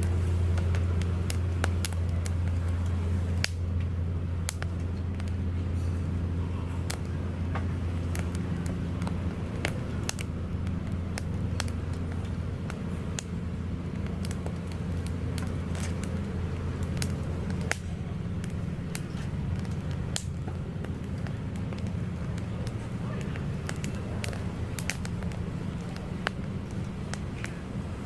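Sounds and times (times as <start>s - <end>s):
steady low hum: 0.0s - 28.0s
wood fire crackling and popping: 0.0s - 28.0s.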